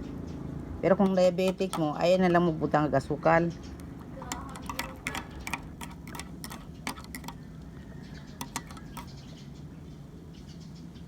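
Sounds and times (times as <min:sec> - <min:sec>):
teaspoon clinking against cup: 0:03.8 - 0:07.4, 0:08.4 - 0:09.1.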